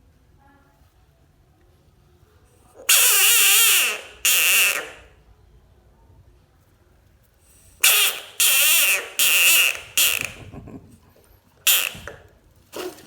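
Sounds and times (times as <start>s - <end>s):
bullfrog screaming: 2.9s - 5.0s, 7.8s - 10.4s, 11.7s - 12.0s.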